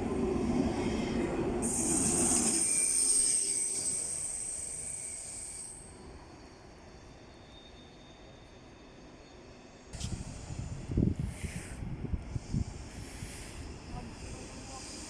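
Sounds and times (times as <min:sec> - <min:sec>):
train rumbling: 0:00.0 - 0:07.5, 0:08.2 - 0:15.0.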